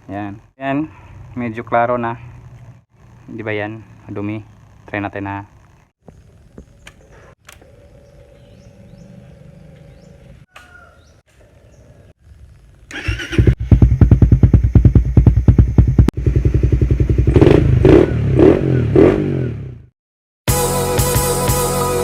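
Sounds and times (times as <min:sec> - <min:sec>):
motorcycle engine idling: 0:12.9 - 0:18.0.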